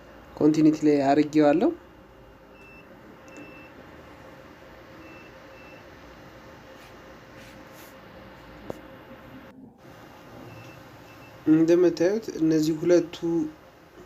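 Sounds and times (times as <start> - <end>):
multimeter beeps: 2.5 - 3.7, 5.0 - 5.9, 10.4 - 11.4.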